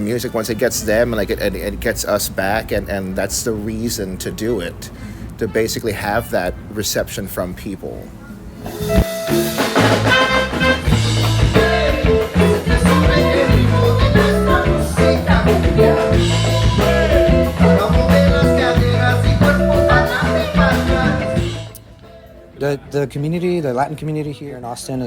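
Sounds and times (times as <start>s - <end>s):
upbeat funk band music: 8.7s - 21.8s.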